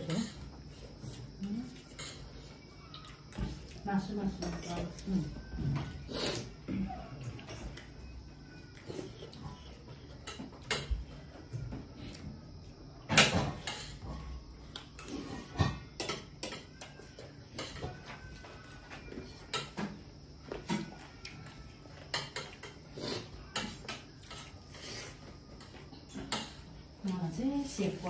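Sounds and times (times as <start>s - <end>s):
cutlery and dishes clinking: 1.1s - 2.6s, 9.0s - 11.4s, 13.1s - 26.8s.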